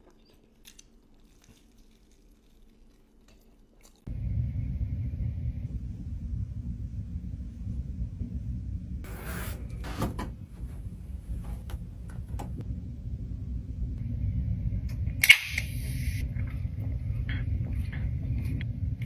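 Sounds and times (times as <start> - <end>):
steady low rumble: 4.1 - 19.0.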